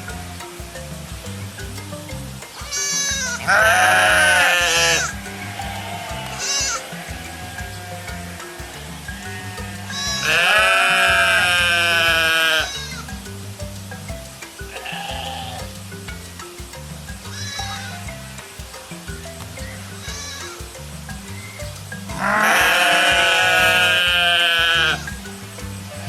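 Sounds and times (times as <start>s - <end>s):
background music: 0.0s - 26.0s
sheep bleating: 9.4s - 12.7s.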